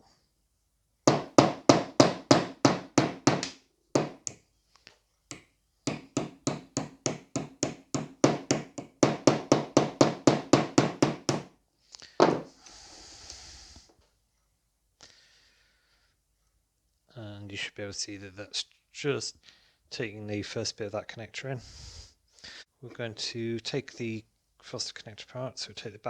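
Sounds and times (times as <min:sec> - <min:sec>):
small hammer tapping: 0:01.1 - 0:04.4, 0:05.3 - 0:11.5.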